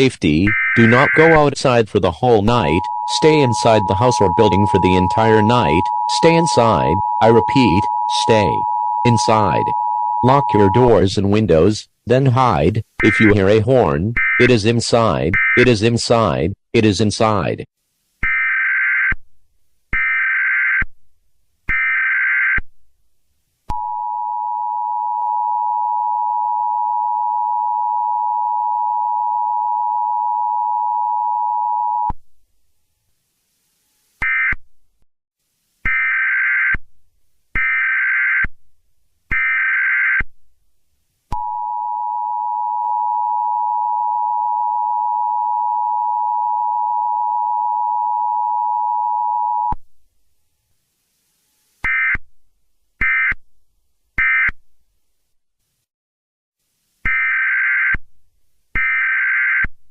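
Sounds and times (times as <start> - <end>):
two-tone attention signal: 2.2 - 11.0.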